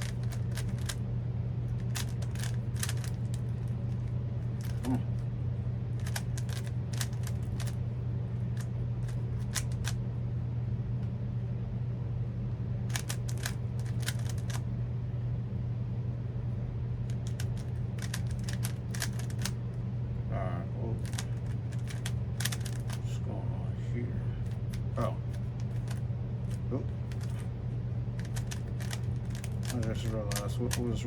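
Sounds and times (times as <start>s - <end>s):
puzzle cube plastic clicks: 0.0s - 1.0s, 1.8s - 5.0s, 6.0s - 7.8s, 8.6s - 10.0s, 12.9s - 14.6s, 17.1s - 19.6s, 21.0s - 23.1s, 24.4s - 27.5s, 28.2s - 30.9s
steady low hum: 0.0s - 31.0s.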